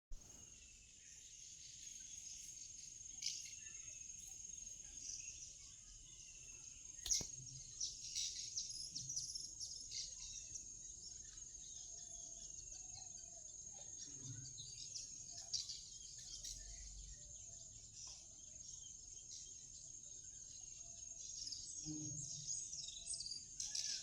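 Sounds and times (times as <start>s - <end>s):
birds chirping: 0.1s - 24.0s
sharp click: 7.0s - 7.3s.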